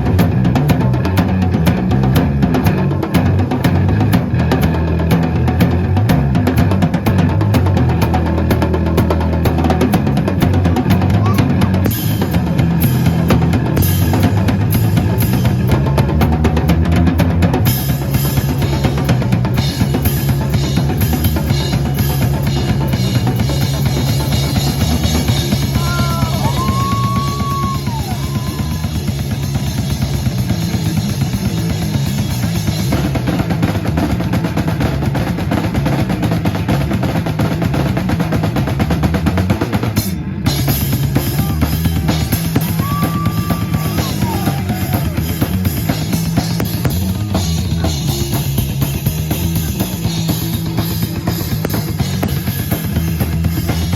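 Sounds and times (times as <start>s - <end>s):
bass line: 0.0s - 53.9s
drum kit: 0.0s - 53.9s
rock band playing: 0.0s - 53.9s.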